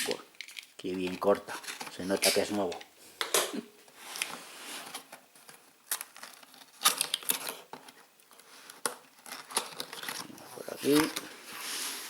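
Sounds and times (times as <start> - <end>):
cardboard and tape scraping: 9.2 - 12.0.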